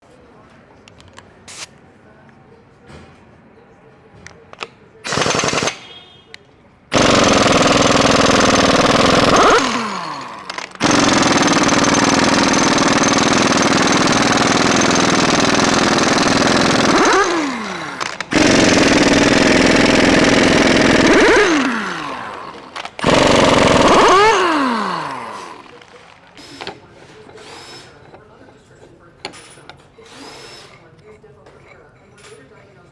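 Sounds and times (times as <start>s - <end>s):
air impact wrench hammering: 5.0s - 6.3s, 6.9s - 28.3s.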